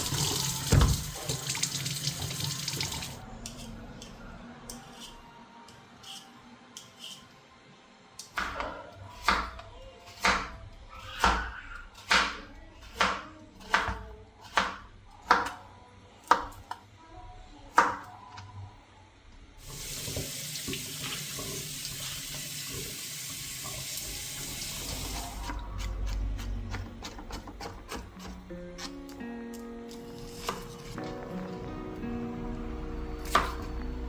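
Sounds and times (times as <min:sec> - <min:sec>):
tap running water into sink: 0:00.0 - 0:03.2, 0:19.6 - 0:25.4
knife chopping on cutting board: 0:26.1 - 0:29.0, 0:30.2 - 0:31.0, 0:33.2 - 0:33.6.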